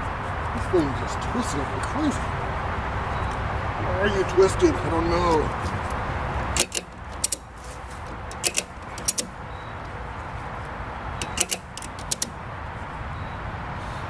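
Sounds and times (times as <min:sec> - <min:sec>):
steady background noise: 0:00.0 - 0:14.0
ratchet strap clicking: 0:05.3 - 0:09.4, 0:11.2 - 0:12.4.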